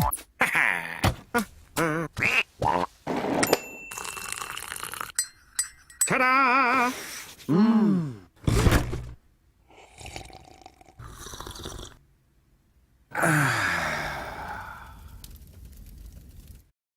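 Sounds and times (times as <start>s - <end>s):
falling groan-like sound: 13.1s - 15.3s.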